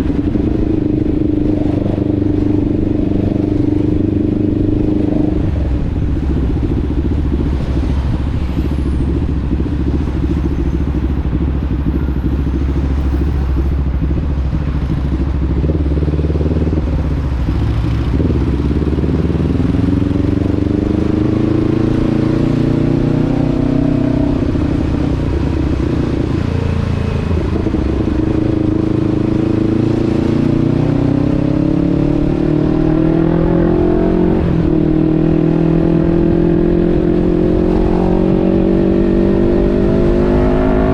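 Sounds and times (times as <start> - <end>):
vehicle engine revving: 0.0 - 40.9.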